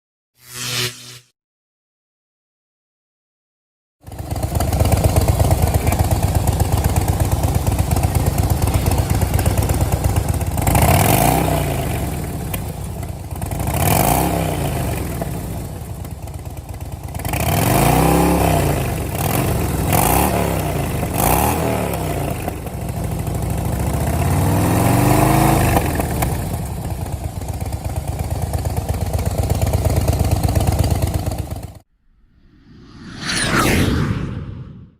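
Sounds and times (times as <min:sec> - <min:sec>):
motorcycle engine idling and revving: 0:04.0 - 0:31.9.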